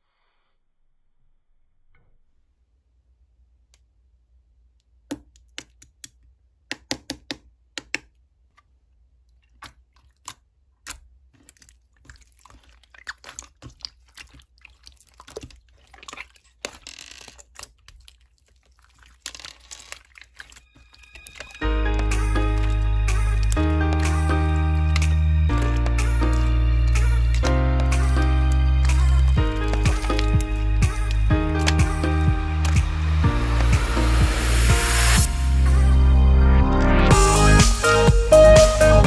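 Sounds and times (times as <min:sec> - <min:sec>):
sharp handling clicks and taps: 0:05.1 - 0:08.6
crinkling and crunching: 0:08.5 - 0:35.2.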